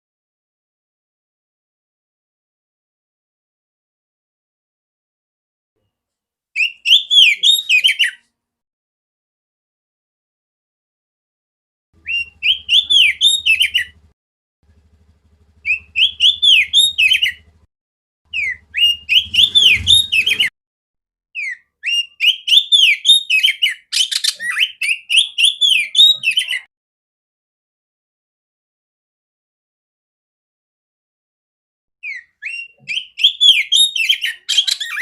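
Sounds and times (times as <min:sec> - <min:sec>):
bird singing whistled song: 0:06.6 - 0:08.2, 0:12.0 - 0:14.0, 0:15.6 - 0:17.4, 0:18.3 - 0:20.5, 0:21.4 - 0:26.7, 0:32.0 - 0:35.0.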